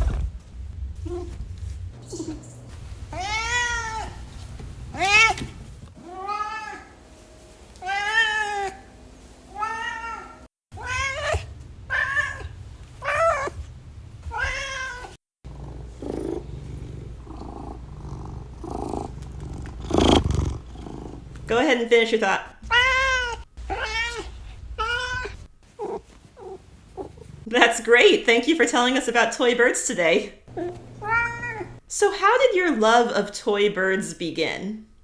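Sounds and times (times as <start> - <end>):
cat meowing: 3.1 - 4.2, 4.9 - 6.9, 7.8 - 8.8, 9.5 - 13.6, 14.3 - 15.2, 22.7 - 27.2, 30.6 - 31.8.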